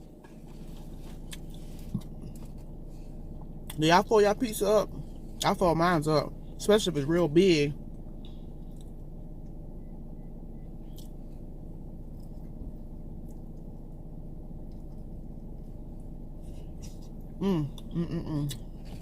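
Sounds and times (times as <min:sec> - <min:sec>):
car interior hum: 0:00.0 - 0:19.0
short hummed voice sound: 0:16.7 - 0:19.0.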